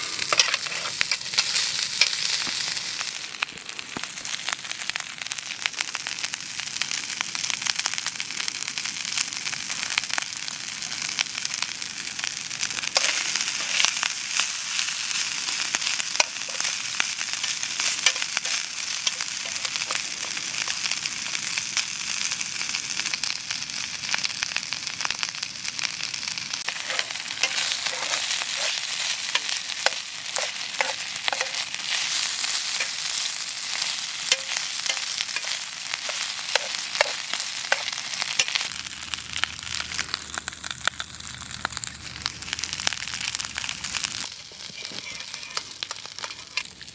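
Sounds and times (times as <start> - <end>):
stirring in a pan: 0.0 - 2.8, 12.8 - 21.0, 26.6 - 38.7, 44.5 - 46.8
mushrooms sizzling in a pan: 0.0 - 46.9.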